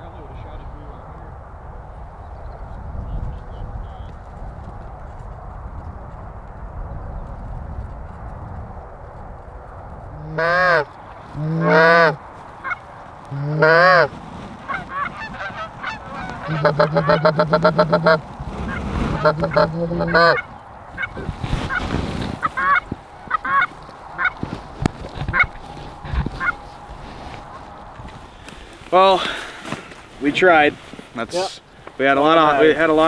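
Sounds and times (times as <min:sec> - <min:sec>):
goose honks and clucks: 0:10.2 - 0:14.1, 0:14.7 - 0:21.8, 0:22.5 - 0:24.4.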